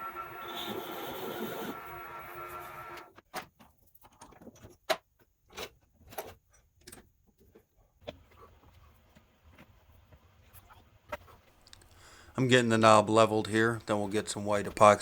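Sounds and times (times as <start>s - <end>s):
power tool motor whining: 0.0s - 3.1s.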